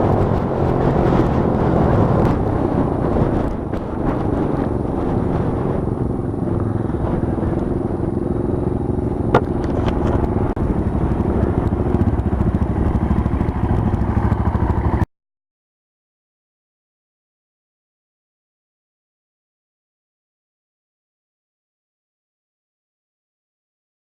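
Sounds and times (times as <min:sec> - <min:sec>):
small motorbike engine rumble: 0:00.0 - 0:15.1.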